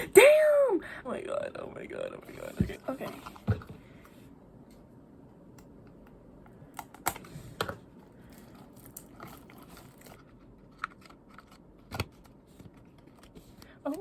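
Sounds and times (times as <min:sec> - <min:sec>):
packaging rustling: 0:08.2 - 0:13.8.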